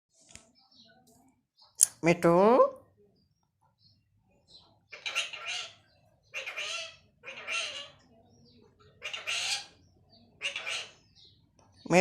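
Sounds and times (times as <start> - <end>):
parrot squawking: 4.9 - 8.0, 8.9 - 9.8, 10.4 - 11.2.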